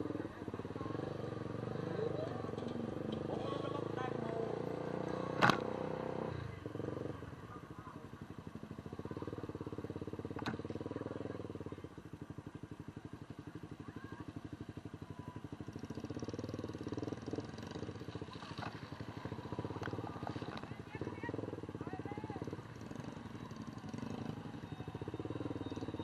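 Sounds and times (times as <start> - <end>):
engine running: 13.8 - 26.0.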